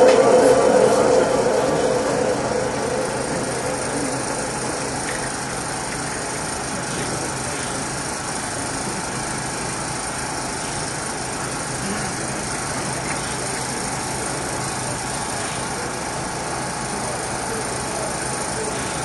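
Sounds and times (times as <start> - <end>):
audience noise through loudspeakers: 0.0 - 19.0.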